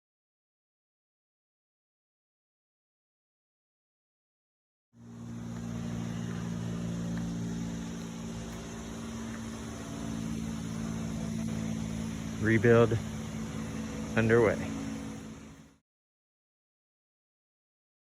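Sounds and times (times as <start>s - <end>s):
steady mechanical hum: 5.0s - 15.8s.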